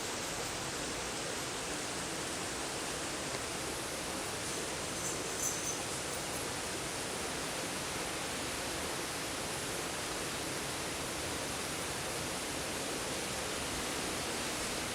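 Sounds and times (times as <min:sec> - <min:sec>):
steady hiss: 0:00.0 - 0:14.9.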